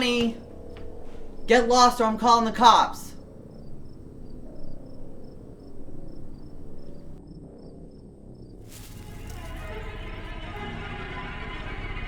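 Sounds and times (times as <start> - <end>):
low steady rumble: 0.0 - 7.2
crickets chirping: 0.0 - 10.5.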